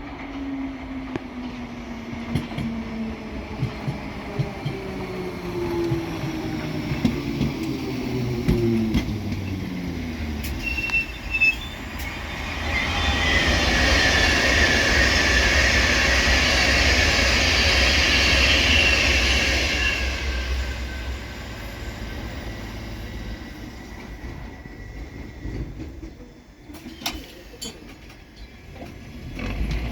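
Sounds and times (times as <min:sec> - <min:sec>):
train wheels rumbling: 0:00.0 - 0:29.9
high wheel squeal: 0:10.4 - 0:27.8.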